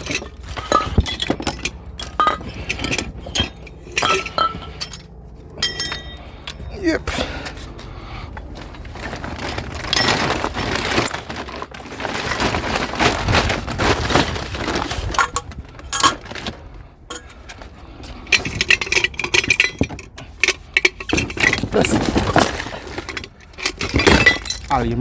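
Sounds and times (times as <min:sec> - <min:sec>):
metal and glass scrap clinking: 0:00.0 - 0:06.7, 0:13.9 - 0:17.5, 0:18.2 - 0:25.0.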